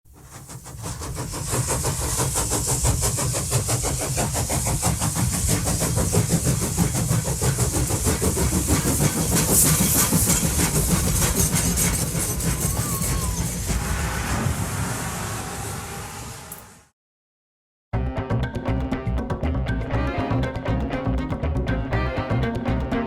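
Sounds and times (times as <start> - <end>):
locomotive engine chugging: 0.1 - 14.3.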